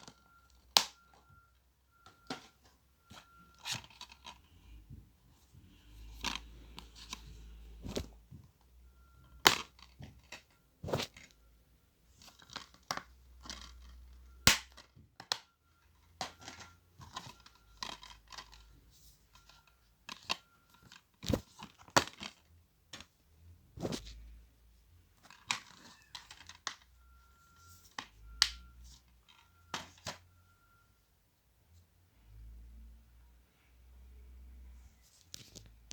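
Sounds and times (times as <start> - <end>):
plastic cases clicking and snapping: 9.4 - 11.4, 12.2 - 15.5, 16.2 - 18.7, 25.2 - 26.9.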